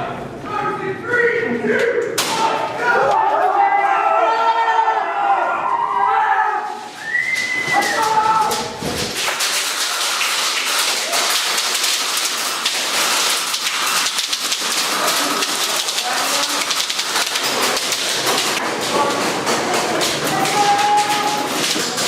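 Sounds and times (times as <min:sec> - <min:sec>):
pellets pattering on surfaces: 0:06.8 - 0:22.0
voices calling out: 0:14.7 - 0:22.0.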